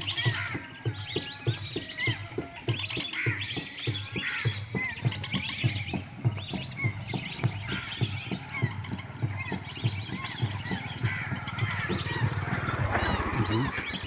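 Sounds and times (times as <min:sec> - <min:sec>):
flock of birds chattering: 0:00.0 - 0:14.0.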